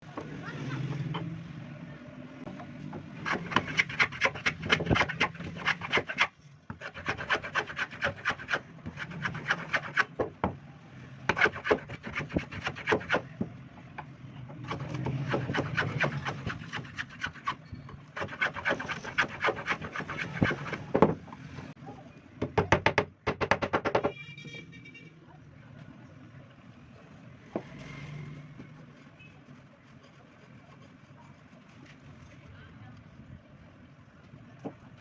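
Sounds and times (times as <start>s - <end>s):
hand tool rasping on wood: 3.2s - 10.1s, 18.2s - 20.8s.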